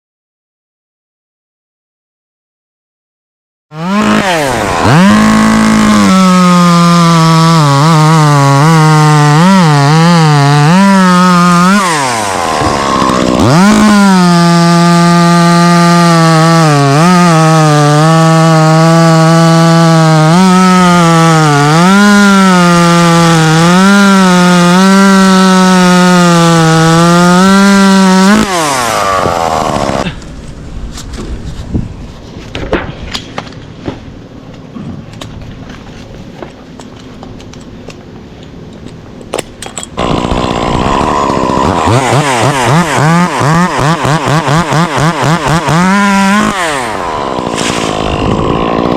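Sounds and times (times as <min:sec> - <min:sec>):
chainsaw cutting wood: 0:03.7 - 0:31.3, 0:39.3 - 0:48.9.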